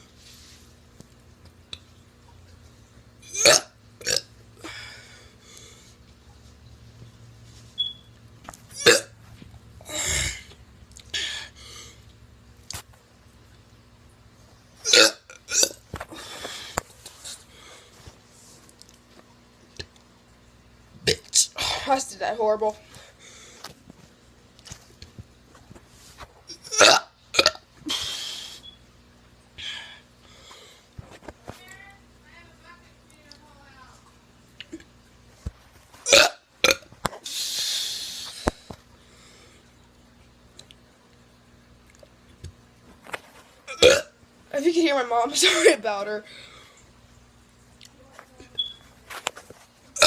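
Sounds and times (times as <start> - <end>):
person burping: 3.2 - 4.8, 8.7 - 9.1, 9.8 - 11.5, 14.8 - 15.8, 21.0 - 21.9, 26.5 - 27.6, 36.0 - 36.9, 43.7 - 44.2
breathy hiss: 27.8 - 28.8, 37.2 - 39.8.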